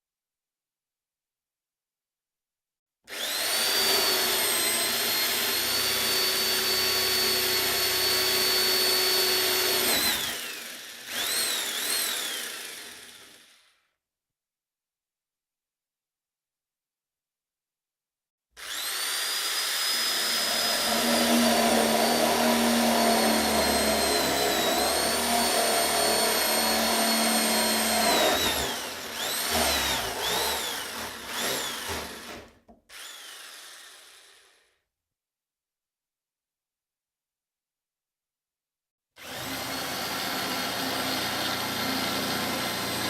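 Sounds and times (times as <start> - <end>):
electric drill motor whining: 3.1 - 13.8, 18.6 - 34.7, 39.2 - 43.0.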